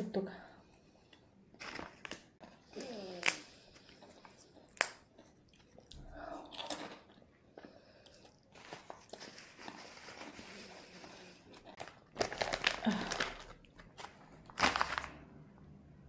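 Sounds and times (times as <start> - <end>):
crunching of crisp food: 1.6 - 15.2.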